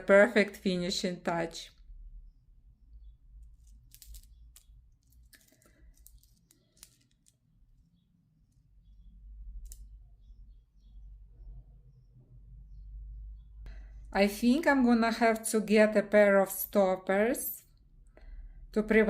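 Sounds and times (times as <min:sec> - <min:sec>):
charm beads clicking together: 0:03.4 - 0:07.9, 0:09.4 - 0:10.0.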